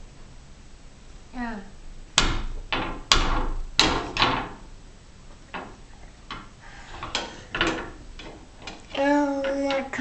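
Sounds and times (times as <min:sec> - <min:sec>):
sharp knocks: 0:02.2 - 0:04.7.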